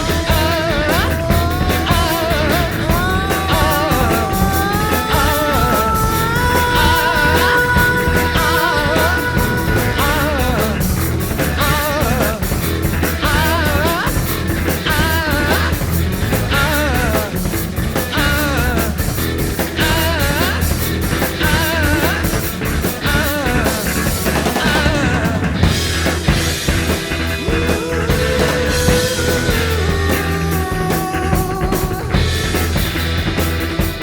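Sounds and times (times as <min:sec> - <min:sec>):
person singing in wavering phrases: 0:00.0 - 0:12.5, 0:13.2 - 0:17.4, 0:18.0 - 0:19.0, 0:21.4 - 0:22.4, 0:27.4 - 0:32.3
song with drums and bass: 0:00.0 - 0:34.0.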